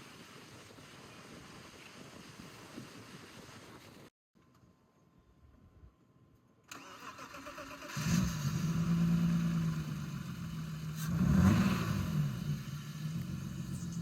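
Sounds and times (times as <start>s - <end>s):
car engine cranking and starting: 6.7s - 14.0s
car engine running and revving: 8.0s - 14.0s.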